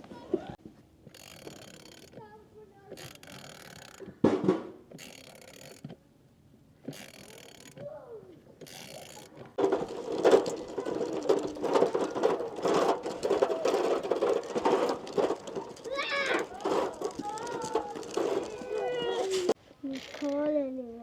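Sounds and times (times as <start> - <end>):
tractor diesel engine clatter: 9.6 - 19.6.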